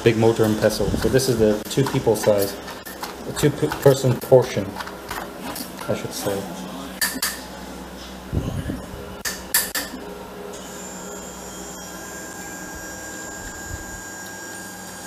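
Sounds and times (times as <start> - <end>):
faint high whine: 10.0 - 15.0.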